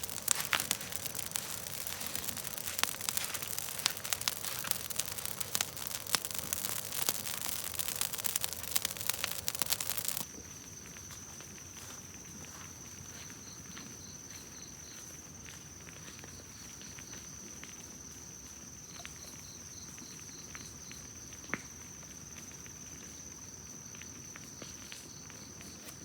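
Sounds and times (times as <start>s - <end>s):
fire crackling and popping: 0.0s - 10.3s.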